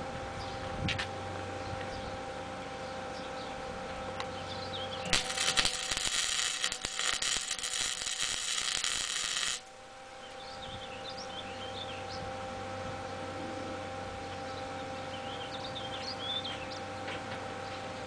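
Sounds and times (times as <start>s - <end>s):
arc welding crackling: 5.0s - 11.3s.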